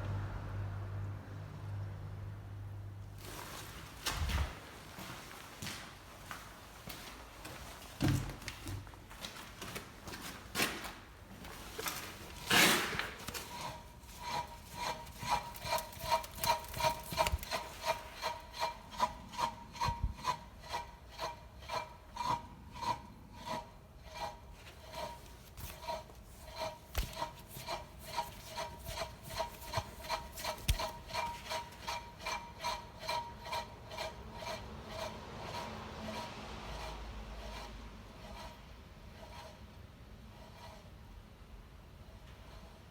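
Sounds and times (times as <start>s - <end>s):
wheel turning with rubbing squeak: 23.4s - 38.6s.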